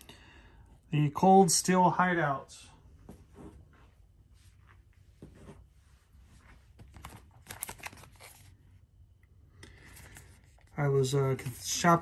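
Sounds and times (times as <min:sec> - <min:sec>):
packaging rustling and crinkling: 0:06.8 - 0:08.6.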